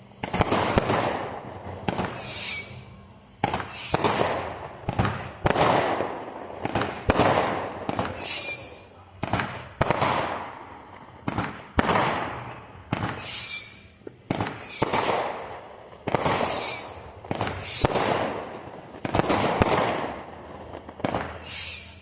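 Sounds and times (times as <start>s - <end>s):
fireworks bangs with rumble: 0.0s - 22.0s
high wavering whistles: 1.9s - 4.6s, 8.0s - 9.1s, 13.0s - 15.5s, 16.2s - 18.0s, 21.2s - 22.0s.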